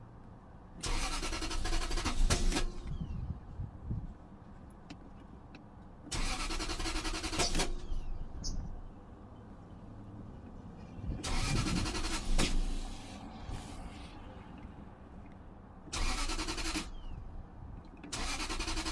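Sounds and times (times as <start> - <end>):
car engine cranking without starting: 0.8 - 3.1, 6.0 - 8.3, 11.2 - 13.0, 15.8 - 17.2, 17.9 - 18.9.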